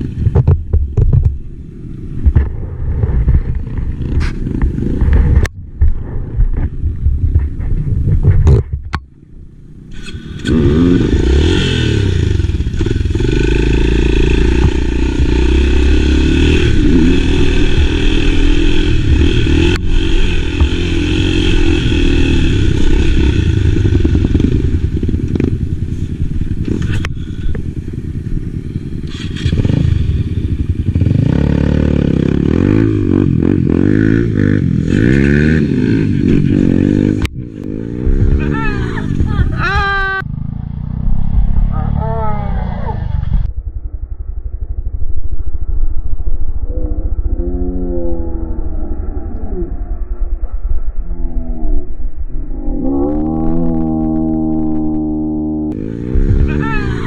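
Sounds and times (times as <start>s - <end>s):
motorcycle engine revving: 9.7s - 45.6s, 52.3s - 57.0s.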